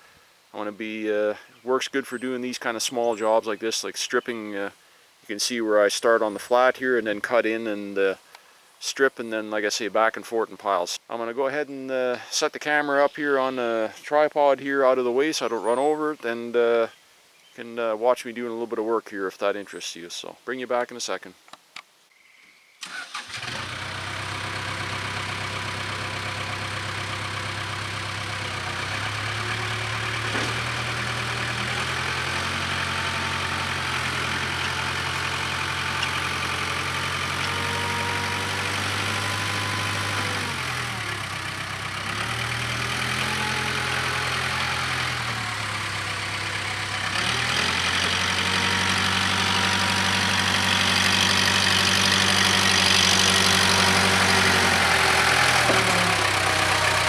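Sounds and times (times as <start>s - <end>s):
diesel engine running: 22.8s - 57.0s.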